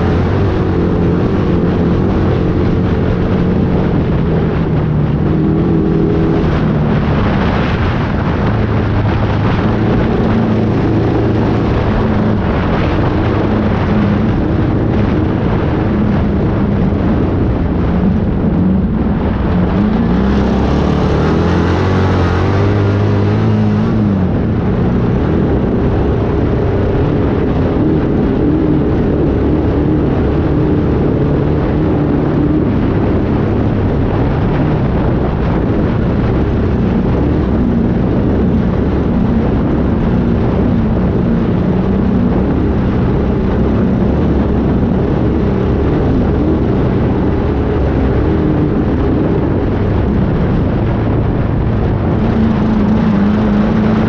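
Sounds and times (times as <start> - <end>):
dense rushing noise: 0.0 - 54.0
race vehicle engine running hard: 0.0 - 54.0.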